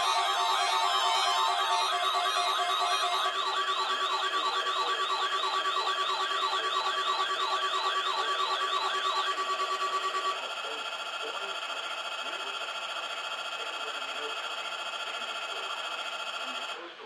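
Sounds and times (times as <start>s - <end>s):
siren-like rising whoop: 0.0s - 10.3s
steady high tone: 0.0s - 10.5s.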